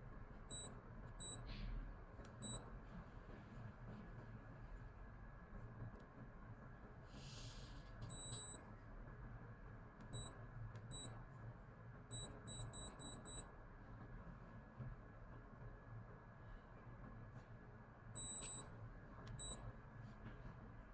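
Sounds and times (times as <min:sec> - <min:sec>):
digital watch beeping: 0:00.5 - 0:01.4, 0:08.1 - 0:08.6, 0:12.1 - 0:13.5, 0:18.2 - 0:18.6.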